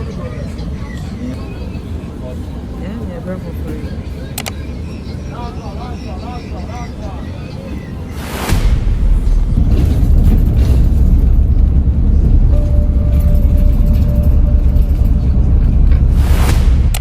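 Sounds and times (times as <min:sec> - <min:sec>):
vehicle interior road rumble: 0:08.5 - 0:17.0
faint brief tone: 0:12.5 - 0:16.1.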